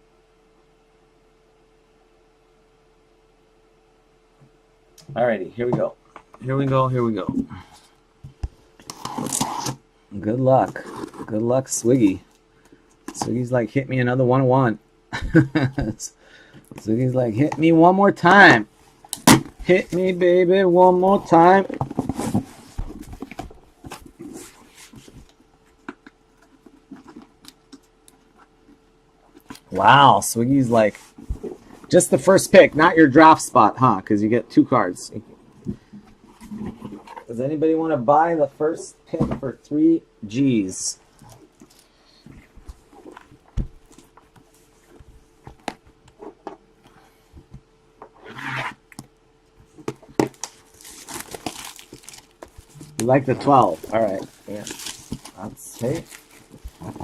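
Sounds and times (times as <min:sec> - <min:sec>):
plastic and cardboard crinkling: 0:20.8 - 0:29.8, 0:48.2 - 0:57.0.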